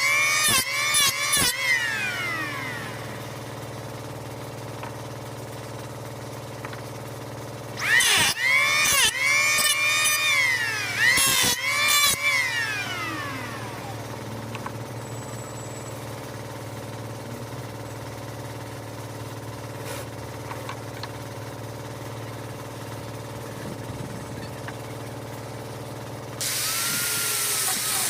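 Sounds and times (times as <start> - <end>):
power carving tool whining: 0.0 - 3.8, 7.8 - 18.0, 26.4 - 28.0
steady low hum: 12.2 - 18.8.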